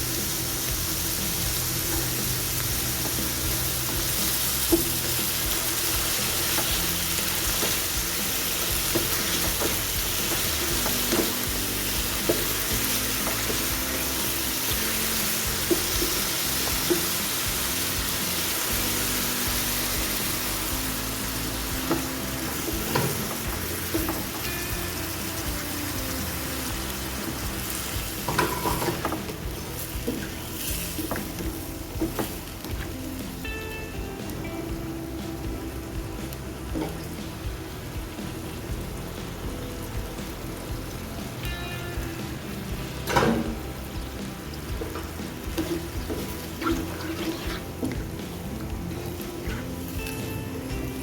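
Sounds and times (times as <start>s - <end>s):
food sizzling in hot oil: 0.0s - 51.0s.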